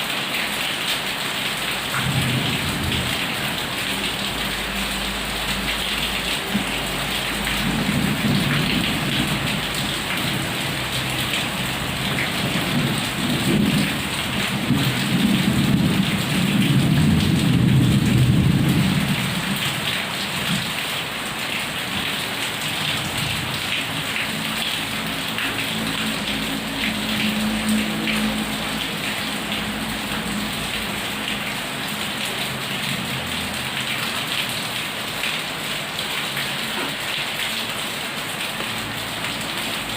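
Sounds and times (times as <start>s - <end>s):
heavy rain: 0.0s - 39.9s.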